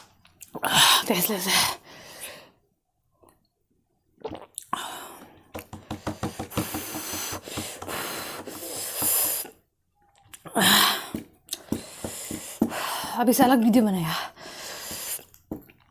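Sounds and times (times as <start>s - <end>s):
person slurping noodles: 4.2s - 4.9s.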